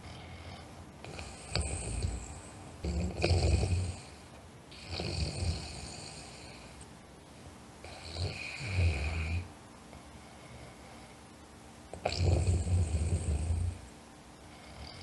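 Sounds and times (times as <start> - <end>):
person snoring: 0.0 - 6.8, 7.8 - 9.5, 12.0 - 13.8
quiet breathing: 0.0 - 15.0.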